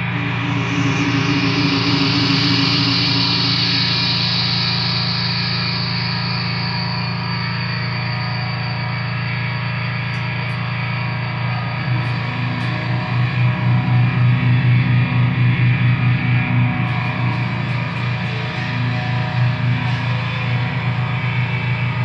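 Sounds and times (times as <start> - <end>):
loud distorted music: 0.0 - 6.8, 11.8 - 22.0.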